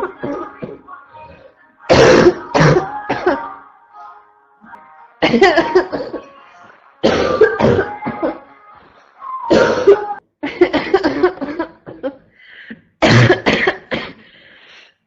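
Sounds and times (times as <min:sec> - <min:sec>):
person coughing harshly: 0:01.9 - 0:03.4, 0:05.2 - 0:06.3, 0:07.0 - 0:08.4, 0:09.5 - 0:12.2, 0:13.0 - 0:14.3.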